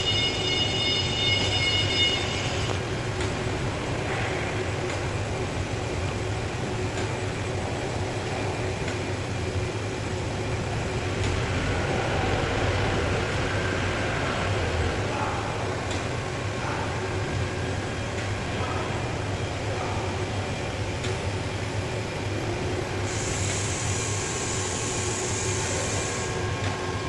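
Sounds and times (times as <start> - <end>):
machine mechanical hum: 0.0 - 27.0.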